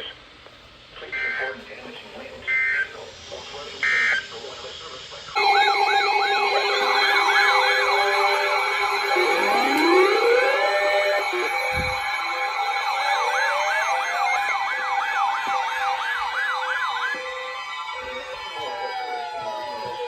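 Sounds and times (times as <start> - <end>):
emergency vehicle sirens: 5.4 - 20.0.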